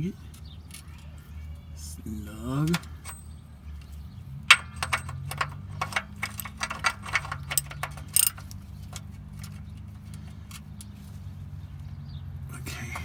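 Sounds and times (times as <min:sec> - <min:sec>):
ratchet wrench clicking: 0:03.8 - 0:11.0.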